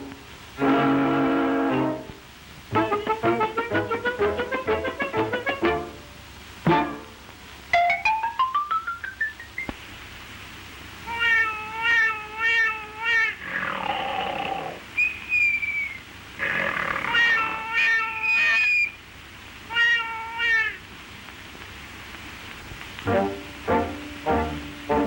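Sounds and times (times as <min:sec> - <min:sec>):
cartoon cat meowing: 0:11.0 - 0:13.4, 0:17.0 - 0:18.9, 0:19.7 - 0:20.8
cat hissing: 0:11.1 - 0:14.9, 0:16.4 - 0:18.8.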